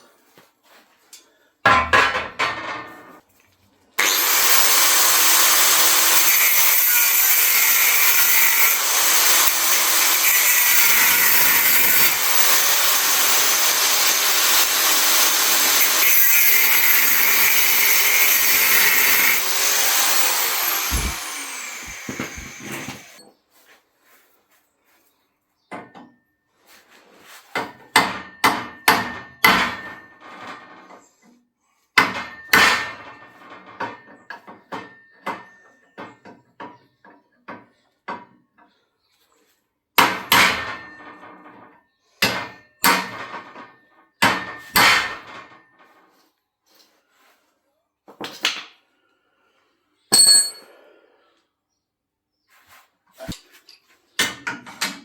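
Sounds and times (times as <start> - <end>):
high metallic ding: 50.1 - 50.7.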